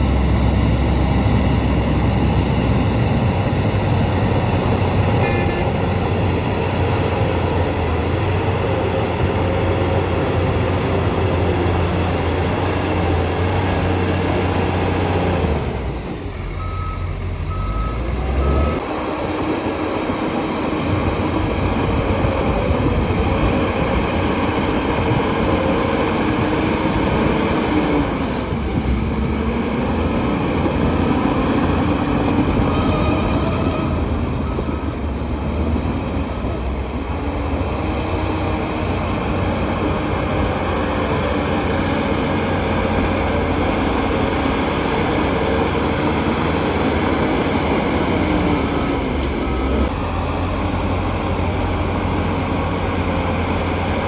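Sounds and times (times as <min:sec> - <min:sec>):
heavy diesel machinery running: 0:00.0 - 0:54.0
reversing alarm beeps: 0:16.4 - 0:18.8.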